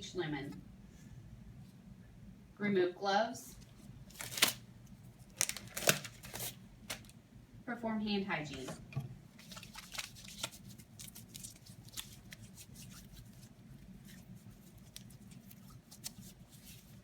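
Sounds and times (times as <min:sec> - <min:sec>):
disposable gloves rustling: 0:03.5 - 0:07.2, 0:08.4 - 0:17.0.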